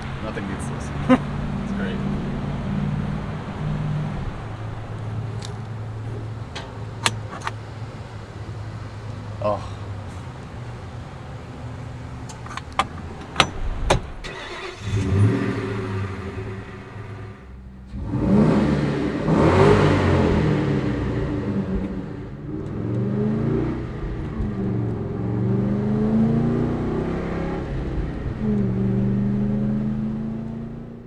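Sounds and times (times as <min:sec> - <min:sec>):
car engine starting and idling: 0:00.0 - 0:30.8
car engine revving: 0:14.3 - 0:31.0.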